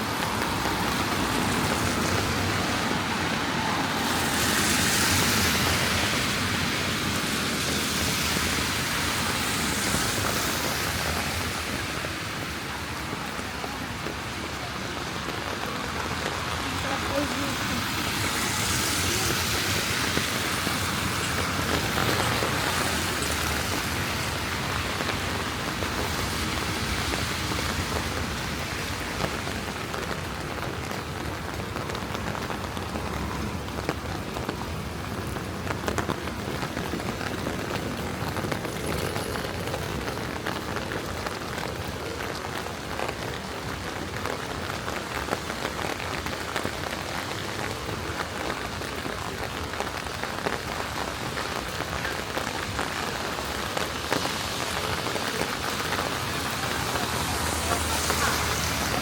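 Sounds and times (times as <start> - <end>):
rain on wet pavement: 0.0 - 59.0.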